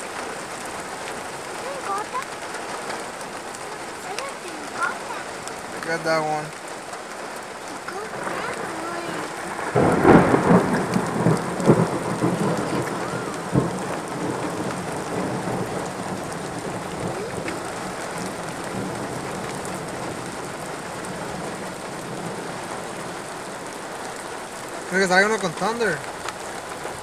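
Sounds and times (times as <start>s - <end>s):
steady rain: 0.0s - 27.0s
thunder crack and rumble: 7.8s - 26.2s.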